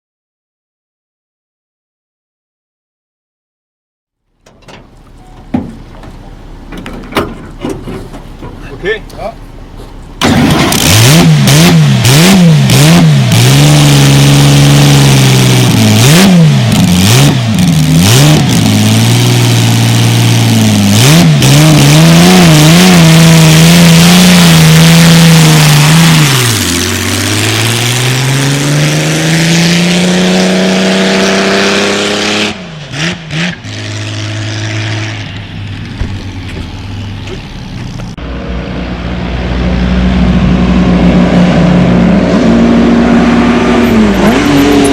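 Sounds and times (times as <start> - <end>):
racing car engine revving: 10.2 - 44.9.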